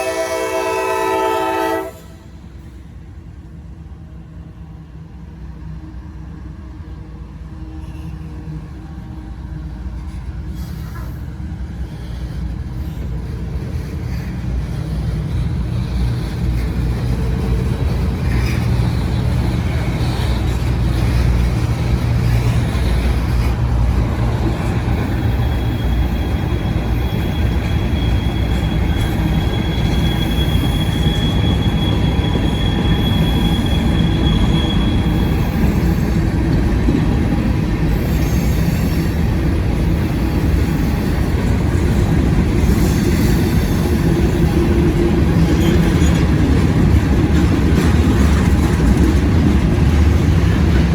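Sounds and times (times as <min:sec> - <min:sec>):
train wheels rumbling on rail: 0:00.0 - 0:50.9
high wheel squeal: 0:24.6 - 0:36.4, 0:37.8 - 0:41.6, 0:42.5 - 0:49.0.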